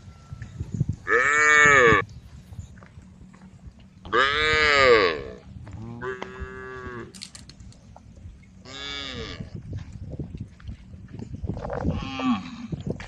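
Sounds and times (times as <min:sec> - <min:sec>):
cows mooing: 0:01.0 - 0:02.0, 0:04.1 - 0:07.2, 0:08.6 - 0:09.6.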